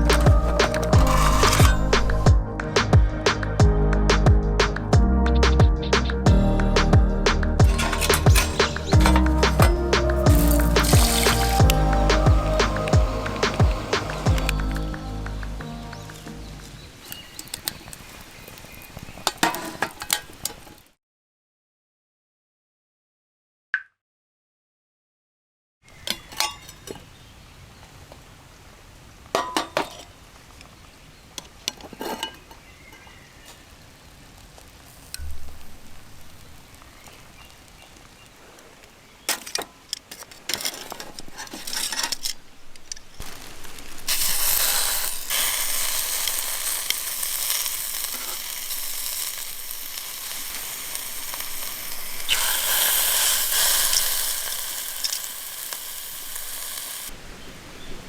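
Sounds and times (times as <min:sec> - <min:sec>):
food sizzling on grill plate: 0:00.0 - 0:02.2, 0:07.7 - 0:14.9, 0:43.2 - 0:57.1
metal cooking gear clinking: 0:00.1 - 0:02.2, 0:07.7 - 0:09.8.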